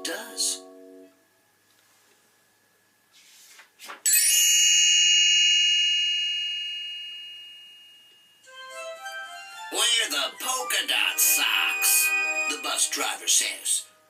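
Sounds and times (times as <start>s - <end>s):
bright bell-like chime: 4.1s - 10.4s.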